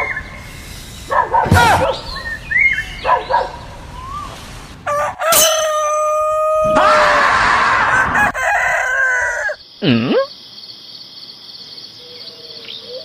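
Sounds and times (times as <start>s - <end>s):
rooster crowing: 4.8s - 9.6s.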